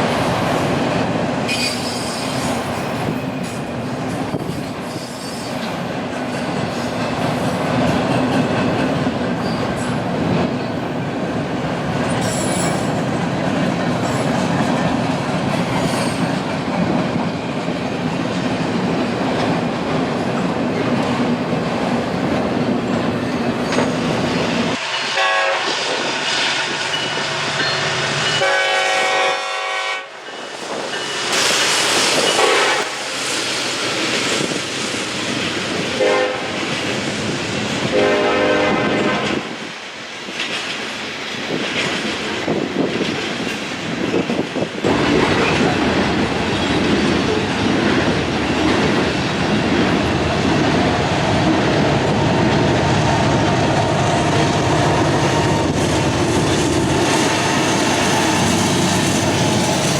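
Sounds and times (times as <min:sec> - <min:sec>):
freight train wheels on rails: 0:00.0 - 0:59.9
locomotive air horn chord: 0:25.2 - 0:25.8, 0:28.4 - 0:30.1, 0:32.4 - 0:33.0, 0:36.0 - 0:36.6, 0:37.9 - 0:39.4.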